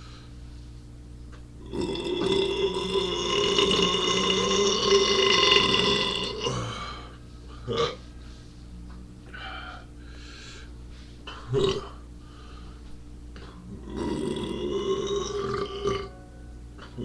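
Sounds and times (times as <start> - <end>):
man burping loudly: 1.6 - 7.0, 7.7 - 8.0, 11.3 - 12.0, 13.7 - 16.1.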